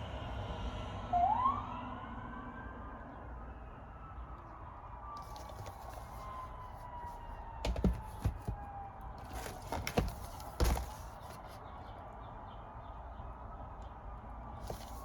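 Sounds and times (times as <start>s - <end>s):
clicks and knocks of handling: 5.2s - 11.6s, 14.6s - 15.0s.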